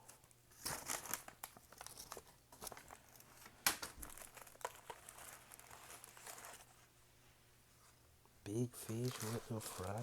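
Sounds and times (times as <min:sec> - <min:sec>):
paper packaging crinkling and tearing: 0:00.5 - 0:06.7, 0:08.8 - 0:10.0.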